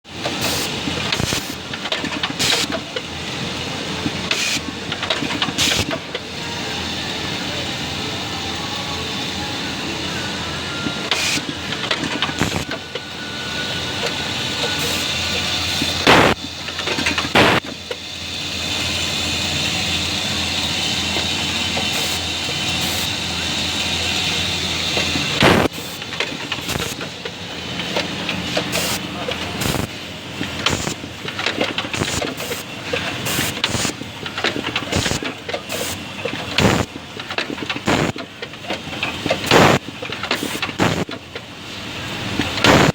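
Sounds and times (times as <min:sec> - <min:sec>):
machine mechanical clatter: 0:00.2 - 0:06.3, 0:11.1 - 0:13.1, 0:14.0 - 0:42.9
short pneumatic hisses: 0:28.7 - 0:29.0, 0:32.0 - 0:33.9, 0:34.9 - 0:36.0.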